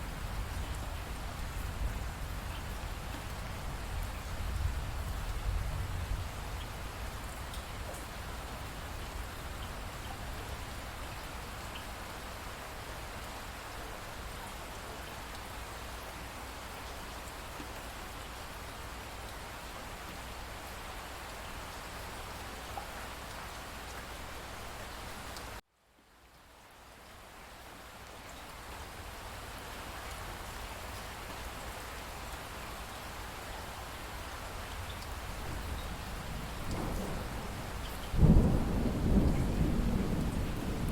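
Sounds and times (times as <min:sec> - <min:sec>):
raindrops pattering: 0:00.0 - 0:12.1, 0:26.3 - 0:40.9
steady rain hiss: 0:00.0 - 0:40.9.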